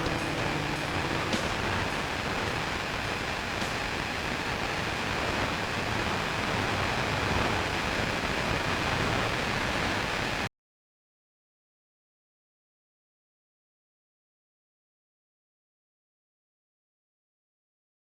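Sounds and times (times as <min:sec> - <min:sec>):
sustained musical note: 0:00.0 - 0:03.2
heavy rain downpour: 0:00.0 - 0:10.5.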